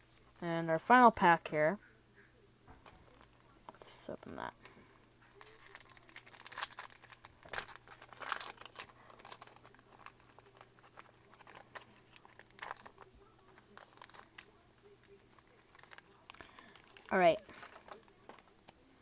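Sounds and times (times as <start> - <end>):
foil wrapper tearing and crinkling: 5.2 - 19.0.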